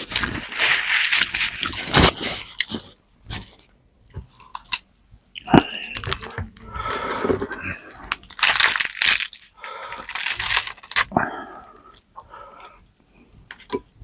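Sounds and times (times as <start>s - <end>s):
crunching and chewing crisp skin: 0.0s - 3.6s, 4.2s - 12.1s.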